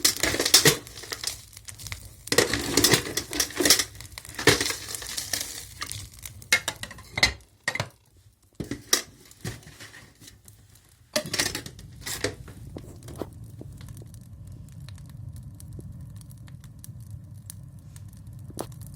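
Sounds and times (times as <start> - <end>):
stove clicks and knocks: 0.0 - 1.4, 2.3 - 8.0, 8.6 - 10.4, 11.2 - 13.2
small crackles: 0.0 - 18.9
stove humming: 0.0 - 18.9.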